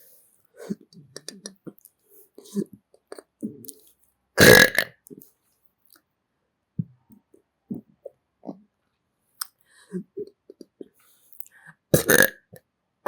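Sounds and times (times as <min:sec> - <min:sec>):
soft mouth sounds: 0:00.6 - 0:05.3, 0:06.8 - 0:08.7, 0:09.4 - 0:12.3
person burping loudly: 0:04.4 - 0:05.0, 0:12.0 - 0:12.4.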